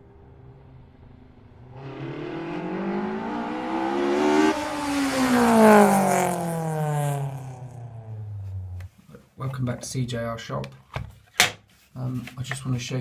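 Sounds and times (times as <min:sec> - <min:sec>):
car engine accelerating: 0:00.0 - 0:08.9.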